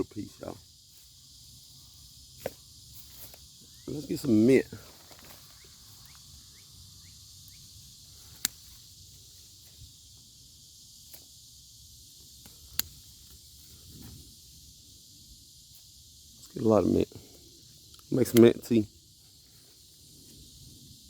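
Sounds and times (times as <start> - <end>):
insects chorus: 0.0 - 21.0
faint ticks: 12.4 - 13.1.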